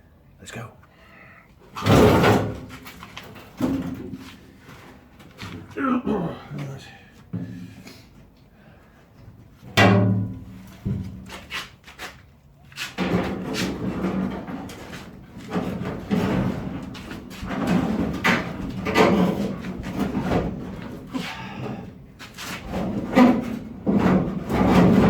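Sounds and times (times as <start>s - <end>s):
heavy clunk with ring: 9.8s - 10.7s.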